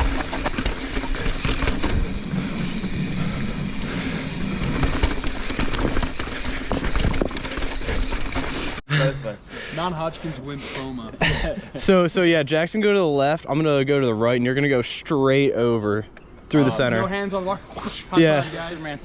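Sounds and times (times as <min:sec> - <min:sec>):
bike rattles and knocks: 0:00.0 - 0:08.8.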